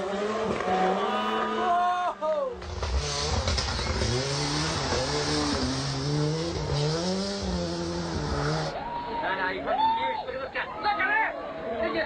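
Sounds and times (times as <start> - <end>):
rally car engine revving: 0.0 - 1.8, 2.6 - 8.8.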